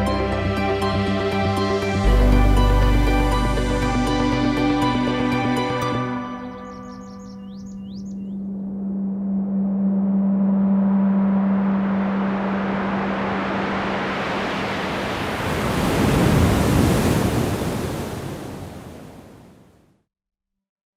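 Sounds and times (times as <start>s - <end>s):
rushing surge like a wave: 0.0s - 6.2s, 8.6s - 19.8s
steady low hum: 8.2s - 14.4s.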